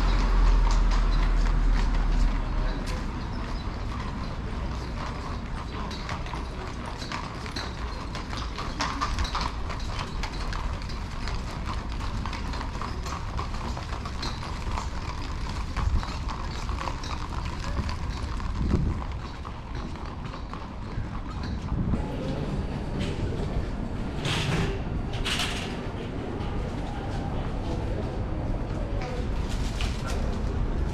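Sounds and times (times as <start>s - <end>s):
horse hooves on pavement: 0.0s - 22.4s.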